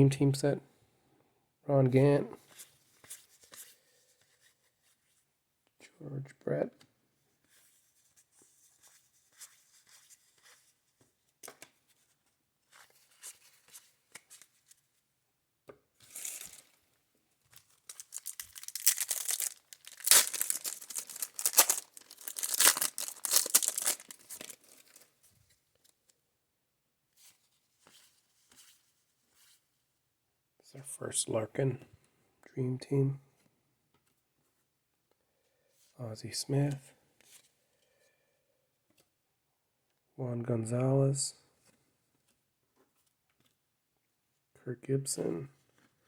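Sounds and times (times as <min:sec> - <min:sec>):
cards rustling: 0:16.0 - 0:16.8, 0:17.5 - 0:25.2
wrapper tearing and crumpling: 0:16.1 - 0:16.6, 0:17.6 - 0:25.0.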